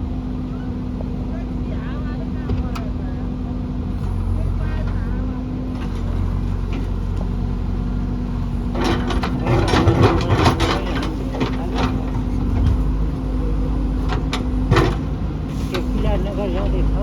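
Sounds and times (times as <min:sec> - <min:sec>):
engine running: 0:00.0 - 0:17.0
clattering knocks and rattles: 0:08.5 - 0:13.3, 0:13.9 - 0:15.9.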